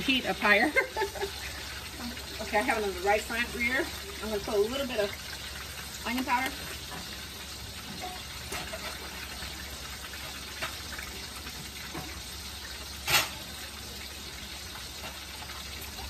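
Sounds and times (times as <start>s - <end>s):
food sizzling in hot oil: 0.0s - 16.0s.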